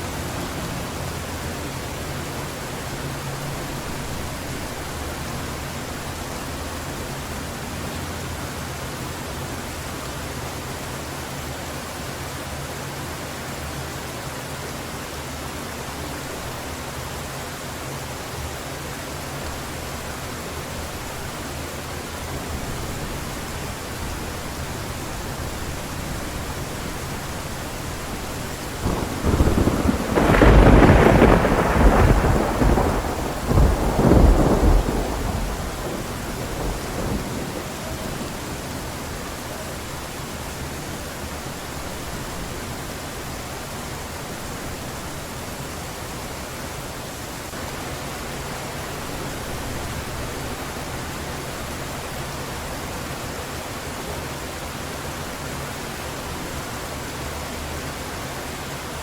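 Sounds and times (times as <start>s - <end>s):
heavy rain: 0.0s - 59.0s
thunder rumbling: 22.5s - 39.9s.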